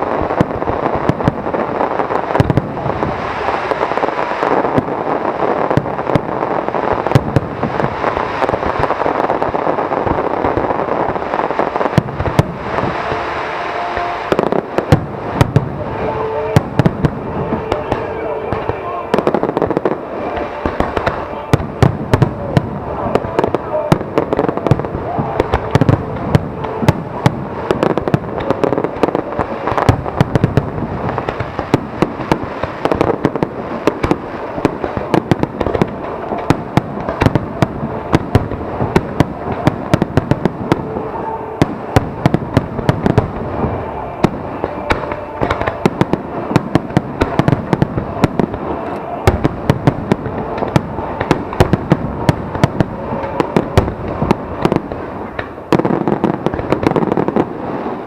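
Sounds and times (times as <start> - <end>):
fireworks bangs and cracks: 0.0 - 58.0.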